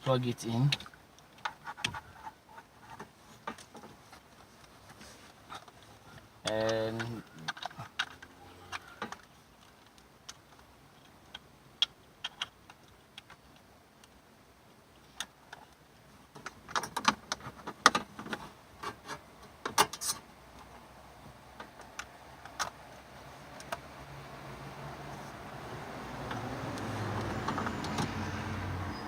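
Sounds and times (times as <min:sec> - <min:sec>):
plastic plugs clicking and knocking: 0:05.5 - 0:14.2, 0:21.6 - 0:23.9, 0:25.1 - 0:28.2.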